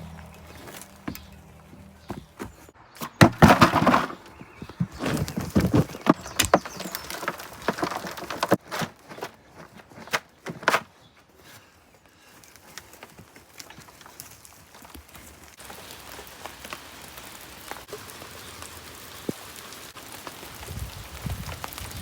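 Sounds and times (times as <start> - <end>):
spade digging into stony earth: 2.0 - 10.9.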